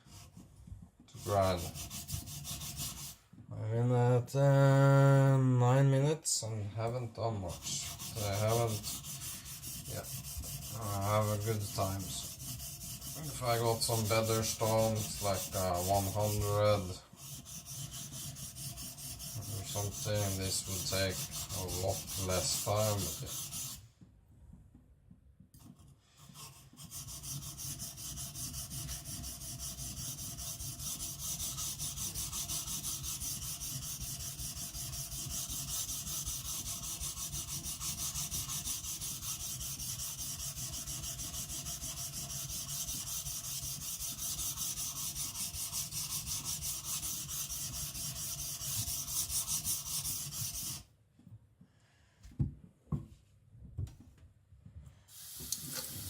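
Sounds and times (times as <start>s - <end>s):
blade grinding on whetstone: 7.6s - 16.6s, 17.2s - 23.8s, 26.9s - 50.8s.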